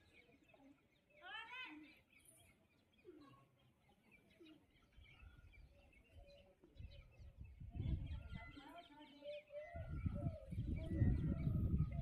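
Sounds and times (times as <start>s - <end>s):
small birds chirping: 0.0s - 12.0s
low rumble of wind: 6.3s - 8.6s, 9.6s - 12.0s.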